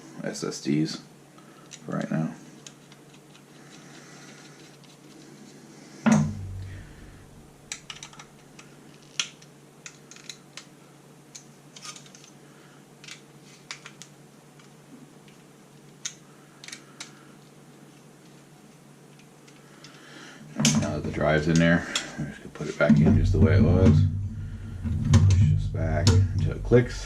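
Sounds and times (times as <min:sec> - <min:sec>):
clicks and taps of small parts: 0:07.7 - 0:10.7, 0:13.0 - 0:17.2.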